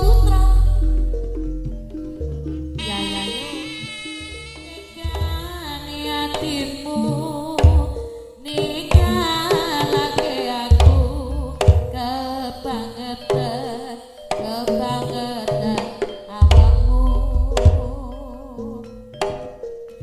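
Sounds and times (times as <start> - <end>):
drum ensemble: 0.0 - 6.6, 7.6 - 12.2, 14.3 - 18.2
wavering melody line: 0.0 - 20.0.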